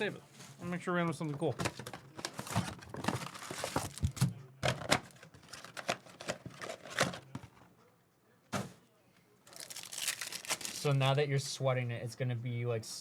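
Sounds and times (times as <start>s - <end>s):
plastic wrappers crackling: 1.6s - 4.2s, 5.0s - 7.0s, 9.5s - 11.1s.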